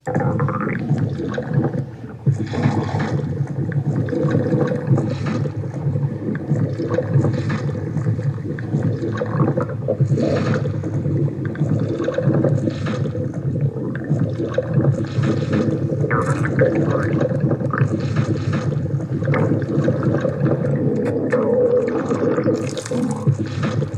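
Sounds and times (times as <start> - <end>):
stomach growling and gurgling: 0.0 - 23.9.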